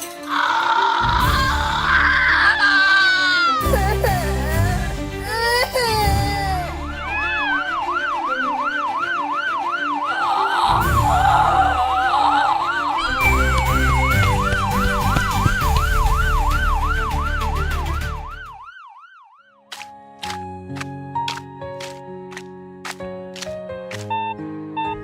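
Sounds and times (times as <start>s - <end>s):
background music: 0.0s - 18.8s, 19.5s - 25.0s
police siren yelping: 6.7s - 19.6s.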